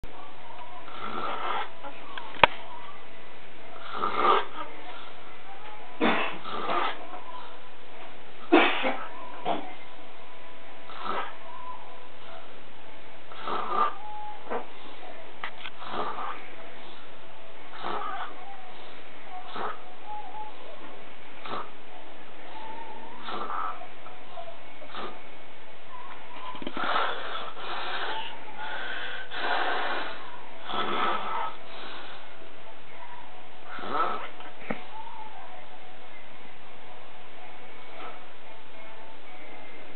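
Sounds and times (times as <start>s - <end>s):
rasping snores: 0.9s - 1.7s, 3.8s - 4.6s, 6.4s - 7.0s, 10.9s - 11.4s, 13.3s - 14.0s, 15.8s - 16.4s, 17.7s - 18.3s, 19.5s - 19.8s, 21.4s - 21.7s, 23.2s - 23.8s, 24.9s - 25.2s, 26.7s - 32.2s, 33.7s - 34.4s.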